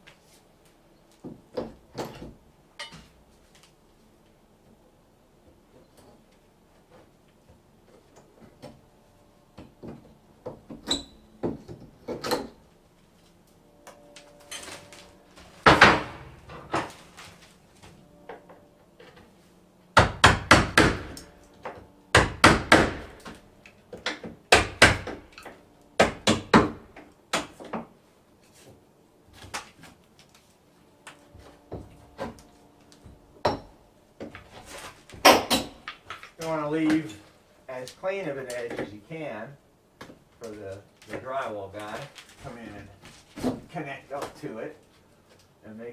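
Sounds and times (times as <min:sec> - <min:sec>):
hammer striking plaster wall: 0:15.6 - 0:16.9, 0:20.0 - 0:21.3, 0:22.2 - 0:23.3, 0:24.0 - 0:25.2, 0:26.0 - 0:26.8.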